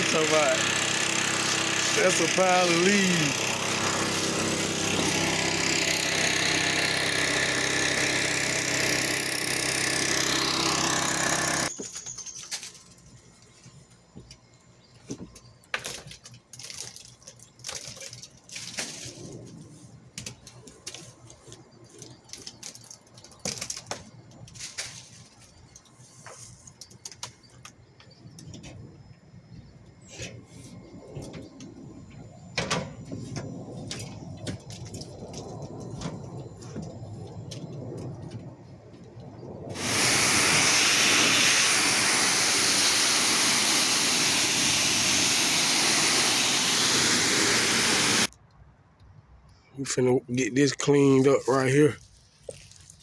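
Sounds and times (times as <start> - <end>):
leaf blower running: 0.0 - 11.7, 39.7 - 48.3.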